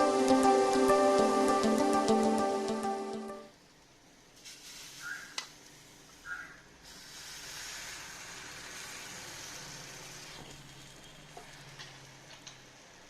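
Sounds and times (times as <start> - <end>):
egg sizzling in a pan: 4.4 - 5.9, 6.8 - 12.0.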